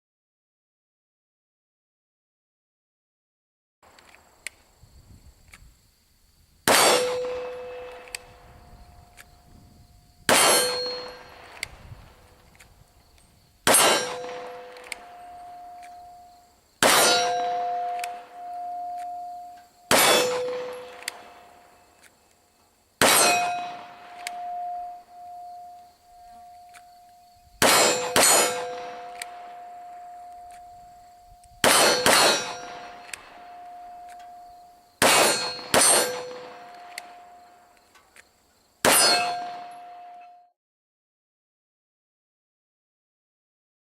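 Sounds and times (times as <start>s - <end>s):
pistol shots: 6.7s - 8.4s, 10.3s - 12.4s, 13.6s - 16.2s, 16.8s - 19.2s, 19.9s - 21.8s, 23.0s - 25.4s, 27.6s - 30.6s, 31.6s - 34.3s, 35.0s - 37.3s, 38.8s - 40.0s
steel plate ringing: 10.4s - 11.4s, 13.7s - 21.6s, 23.1s - 37.4s, 38.9s - 40.4s.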